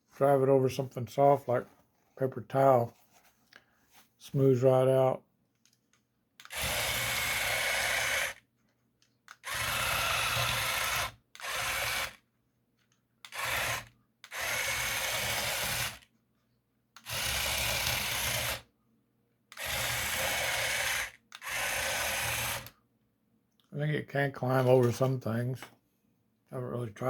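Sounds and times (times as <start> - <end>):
gear motors whirring: 6.4 - 8.4, 9.4 - 12.2, 13.3 - 16.0, 17.0 - 18.6, 19.5 - 22.7.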